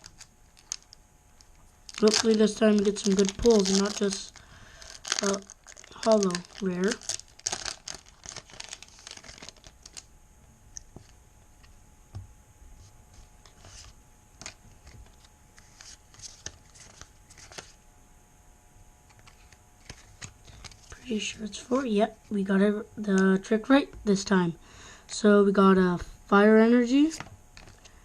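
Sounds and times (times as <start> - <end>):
cards being handled: 0.0 - 10.1, 13.2 - 17.8, 19.1 - 21.9
foil wrapper crinkling and tearing: 0.0 - 10.1.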